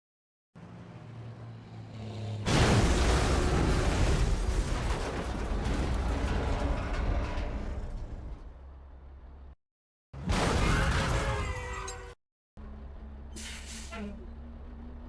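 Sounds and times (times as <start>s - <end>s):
loud explosion blast: 2.5s - 6.2s.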